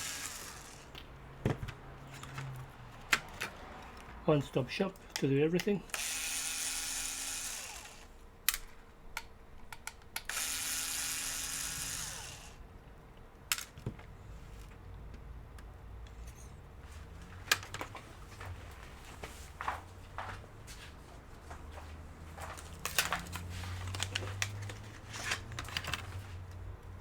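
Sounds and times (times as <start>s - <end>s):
electric screwdriver whirring: 0.0s - 1.0s, 5.9s - 8.2s, 10.2s - 12.6s
clicks of small parts handled: 22.8s - 26.6s.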